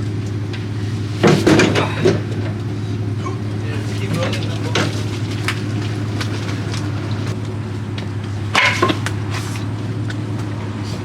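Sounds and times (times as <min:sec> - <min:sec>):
steady low hum: 0:00.0 - 0:11.0
logs knocking together: 0:00.5 - 0:11.0.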